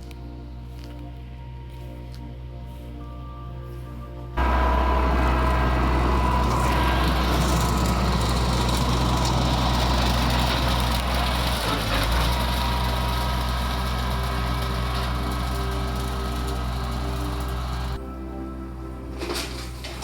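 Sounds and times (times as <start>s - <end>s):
lawn mower engine running: 4.4s - 18.0s.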